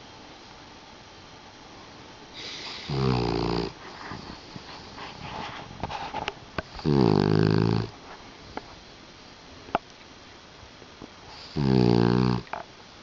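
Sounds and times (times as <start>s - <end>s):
dog snoring: 2.4s - 5.2s, 6.6s - 8.0s, 11.3s - 12.6s.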